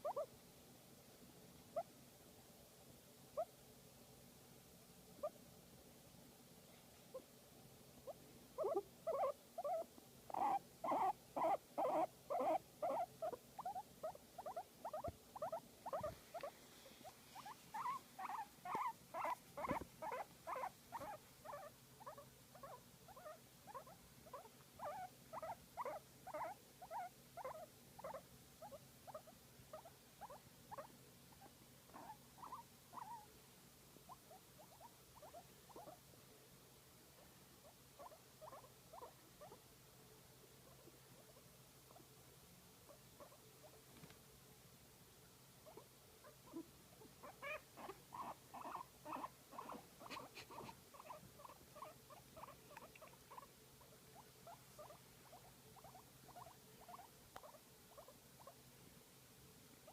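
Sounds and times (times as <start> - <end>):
guinea pig squeaking: 0.0 - 0.3, 1.7 - 1.9, 3.4 - 3.6, 5.2 - 5.4, 8.0 - 33.3, 34.0 - 36.0, 37.6 - 39.6, 40.6 - 42.1, 42.9 - 44.2, 45.6 - 58.6.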